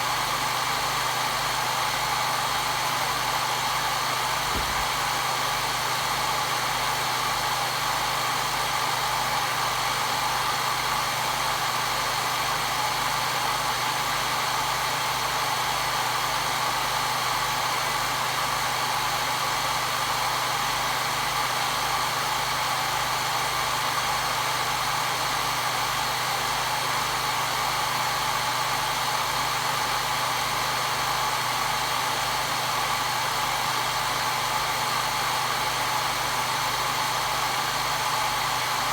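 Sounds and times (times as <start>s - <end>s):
hair dryer running: 4.5s - 5.3s.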